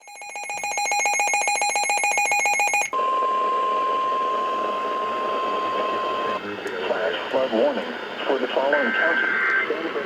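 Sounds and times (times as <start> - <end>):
steady warning tone: 0.2 - 10.0
radio hiss: 5.3 - 10.0.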